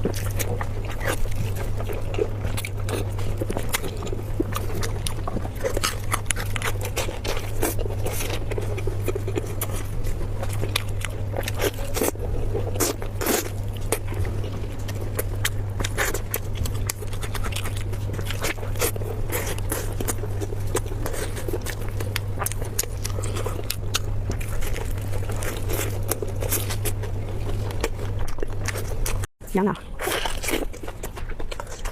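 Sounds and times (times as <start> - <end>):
person chewing food: 0.0 - 31.9
steady low hum: 0.0 - 31.9.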